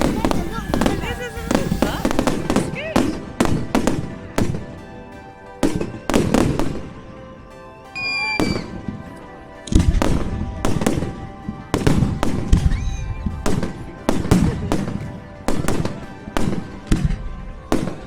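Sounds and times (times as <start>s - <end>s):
firework whistle: 0.0s - 4.7s, 8.0s - 8.9s, 9.8s - 18.0s
fireworks bangs and crackles: 0.0s - 7.2s, 8.0s - 18.0s.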